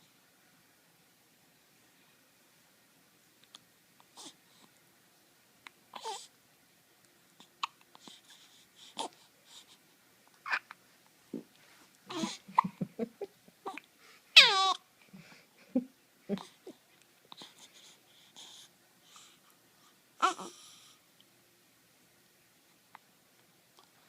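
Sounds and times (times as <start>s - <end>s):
baby hiccups and breaths: 10.4s - 10.7s, 12.1s - 12.7s
baby crying: 12.1s - 12.4s, 14.4s - 14.8s, 20.2s - 20.6s.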